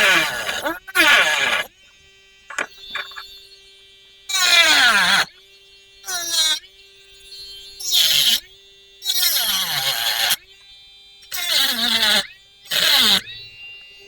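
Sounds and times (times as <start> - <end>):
rotary tool grinding plastic: 0.0 - 1.8, 2.5 - 3.4, 4.3 - 5.3, 6.0 - 6.6, 7.8 - 8.4, 9.0 - 10.4, 11.2 - 14.0
rotary tool humming: 0.0 - 14.0.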